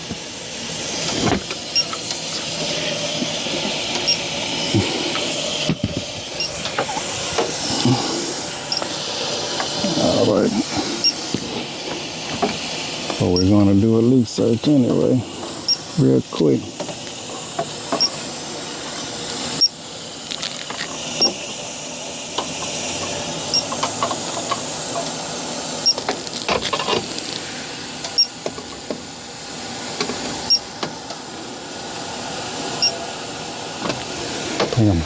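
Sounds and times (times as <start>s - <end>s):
steady hiss: 0.0s - 35.0s
leak detector beeping: 1.7s - 2.0s, 3.8s - 4.4s, 5.7s - 7.0s, 8.7s - 9.0s, 11.0s - 11.2s, 13.2s - 13.6s, 15.6s - 15.9s, 17.9s - 18.2s, 19.6s - 19.8s, 21.2s - 21.4s, 23.4s - 23.8s, 25.8s - 26.1s, 28.1s - 28.4s, 30.4s - 30.7s, 32.8s - 33.0s.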